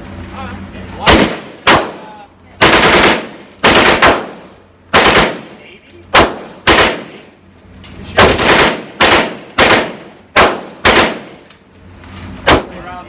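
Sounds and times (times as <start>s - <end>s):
gunshots echoing: 1.0s - 7.3s, 8.2s - 11.4s, 12.4s - 12.8s.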